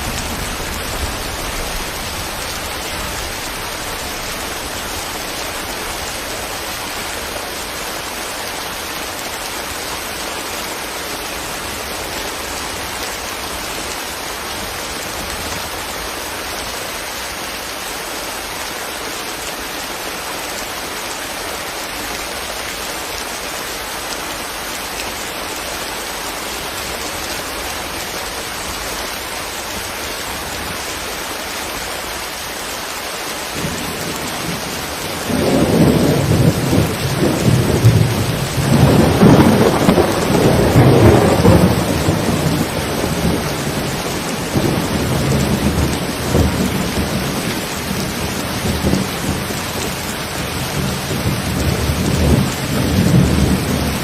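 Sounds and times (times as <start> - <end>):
steady rain falling: 0.0 - 54.0
rolling rumble of thunder: 33.6 - 49.6.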